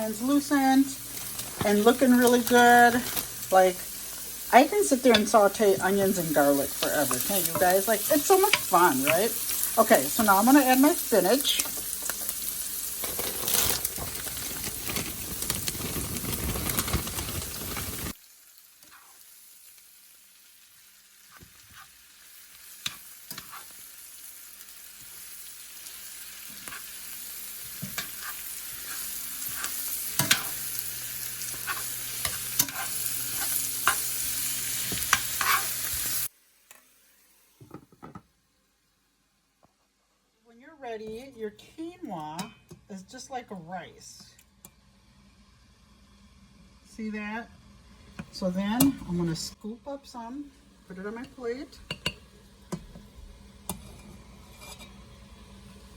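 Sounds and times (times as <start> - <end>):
spinach sizzling in a pan: 0.0 - 39.0, 41.3 - 55.9
utensil scraping a pan: 18.8 - 19.2, 22.8 - 23.8, 26.5 - 27.0, 27.6 - 36.1, 53.7 - 55.1.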